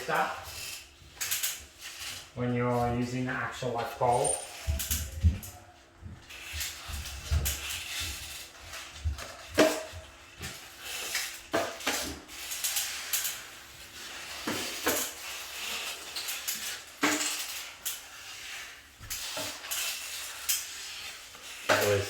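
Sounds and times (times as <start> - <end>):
metallic clinks: 4.1 - 5.2.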